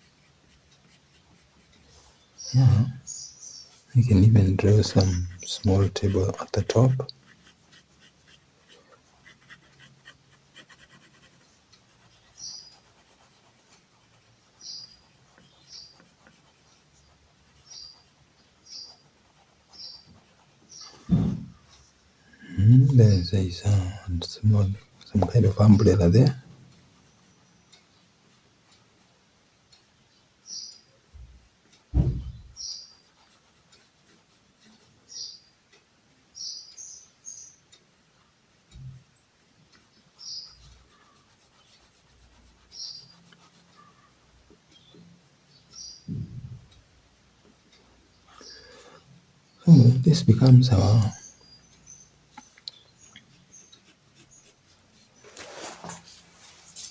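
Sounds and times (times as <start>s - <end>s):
pen scratching on paper: 0.0s - 2.8s, 3.7s - 21.8s, 32.6s - 34.9s, 40.2s - 44.0s, 52.3s - 56.1s
small bird chirping: 0.0s - 26.4s, 29.7s - 33.9s, 34.6s - 46.9s, 47.7s - 55.4s
low thump: 21.1s - 21.6s, 31.9s - 32.5s, 46.1s - 46.7s.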